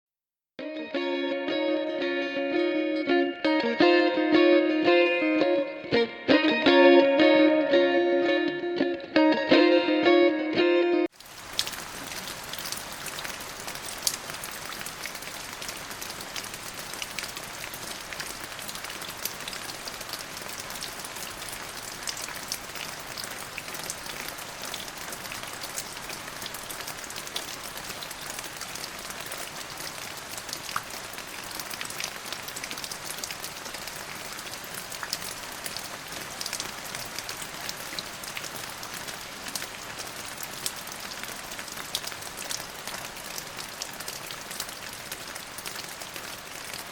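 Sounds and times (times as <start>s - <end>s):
raindrops ticking: 11.1s - 46.9s
steady rain hiss: 11.1s - 46.9s.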